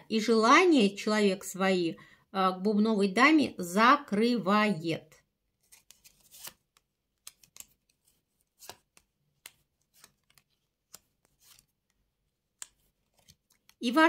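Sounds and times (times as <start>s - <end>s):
playing cards clicking on table: 8.6s - 11.7s.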